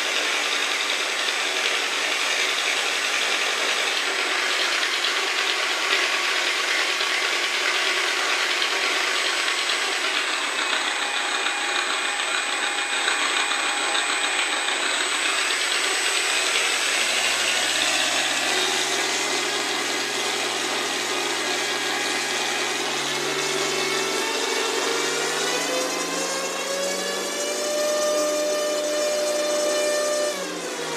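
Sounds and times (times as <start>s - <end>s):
radial engine rattling: 6.6s - 24.9s
low tone rising in pitch: 10.2s - 27.3s.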